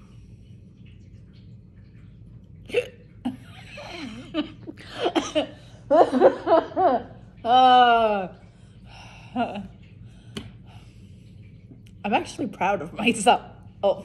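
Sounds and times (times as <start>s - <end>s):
breaths: 8.4s - 11.6s.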